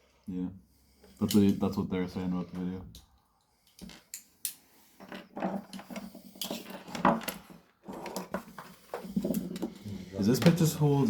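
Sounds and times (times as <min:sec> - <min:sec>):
plastic fan parts clicking and clattering: 0:01.1 - 0:01.8, 0:03.7 - 0:10.8.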